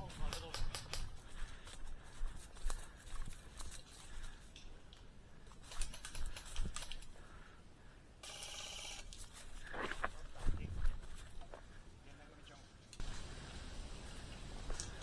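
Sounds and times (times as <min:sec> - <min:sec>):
sharp clicks: 0:00.2 - 0:01.2, 0:05.7 - 0:07.1.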